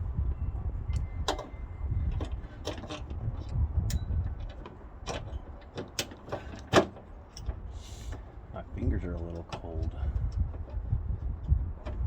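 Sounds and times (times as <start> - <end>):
small metallic clicks and clinks: 2.2 - 6.7.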